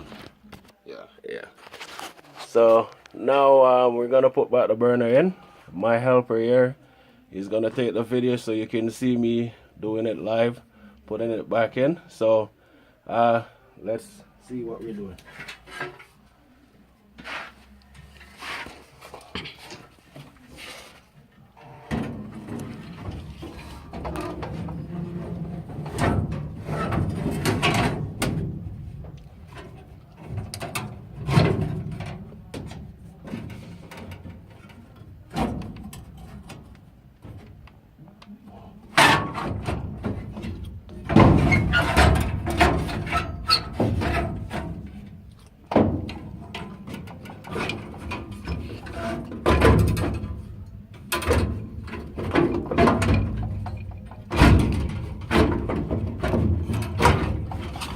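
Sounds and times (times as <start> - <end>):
metal scraping: 17.2 - 32.2
metal clanks and knocks: 21.7 - 37.6, 38.9 - 57.9.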